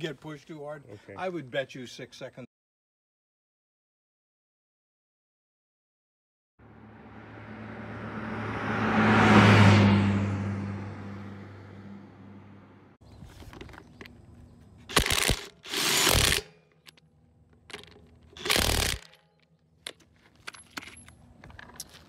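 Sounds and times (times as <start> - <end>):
car engine: 6.6 - 13.0.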